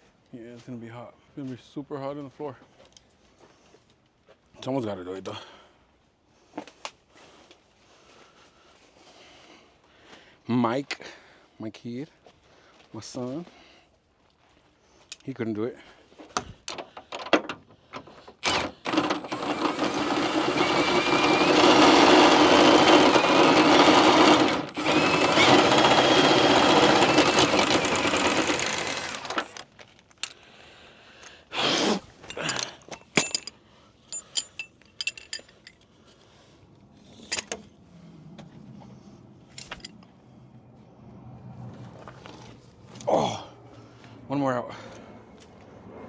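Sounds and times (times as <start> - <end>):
impact wrench hammering: 18.4 - 29.6
metal tools clinking: 18.4 - 29.6, 32.2 - 35.9, 37.2 - 37.7, 39.5 - 40.1.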